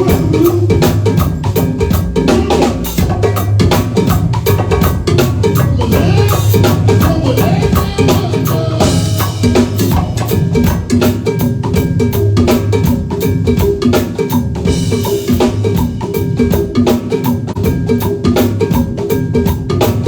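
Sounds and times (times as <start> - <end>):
bass line: 0.0 - 13.6
drum kit beat: 0.0 - 20.0.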